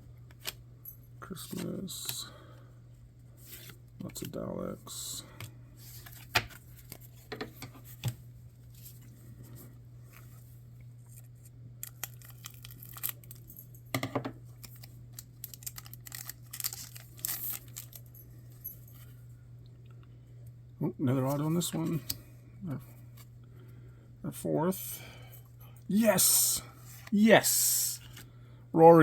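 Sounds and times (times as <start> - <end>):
steady low hum: 0.0 - 29.0
trading cards rustling and flipping: 1.4 - 2.2, 3.4 - 4.4, 5.4 - 13.6, 14.5 - 19.1, 21.2 - 22.2, 25.9 - 28.3
paper crinkling: 11.0 - 13.4, 14.6 - 18.1.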